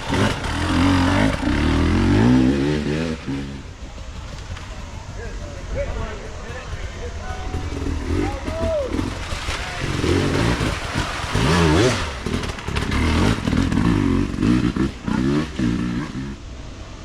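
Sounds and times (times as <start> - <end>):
dirt bike engine revving: 0.0 - 16.8
water splashing: 7.1 - 13.9.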